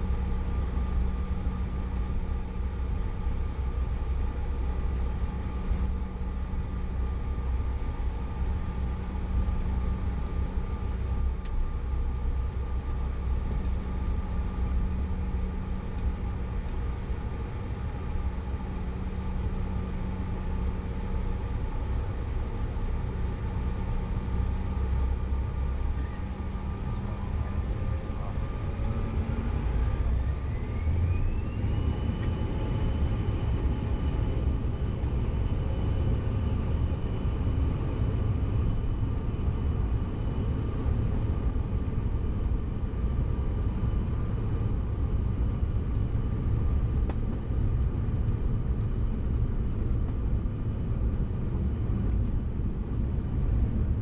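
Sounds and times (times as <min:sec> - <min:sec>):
jet engine rumble and hum: 0:00.0 - 0:54.0
engine whine rising: 0:25.6 - 0:38.8.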